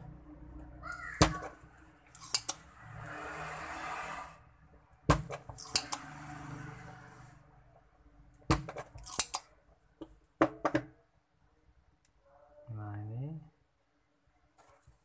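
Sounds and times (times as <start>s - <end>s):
metal tools clicking: 2.1s - 2.6s, 5.6s - 6.0s, 9.0s - 9.5s.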